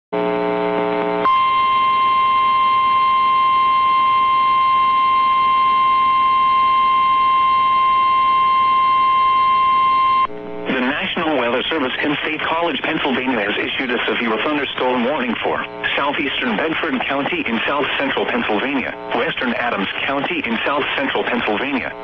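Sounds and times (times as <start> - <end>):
steady high alarm tone: 1.3 - 10.3.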